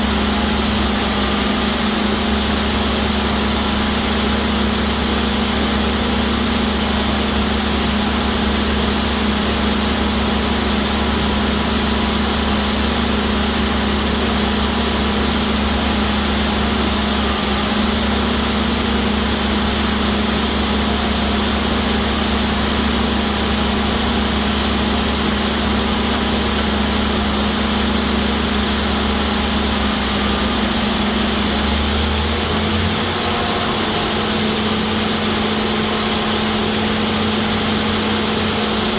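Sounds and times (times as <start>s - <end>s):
drill rig engine droning: 0.0s - 38.9s.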